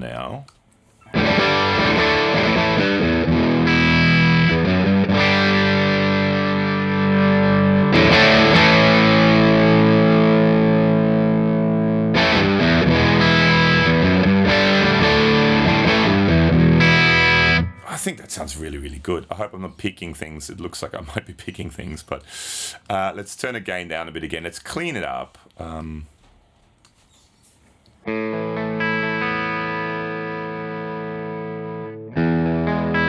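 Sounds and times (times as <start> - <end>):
distorted electric guitar chords: 1.1 - 17.8, 28.0 - 33.0.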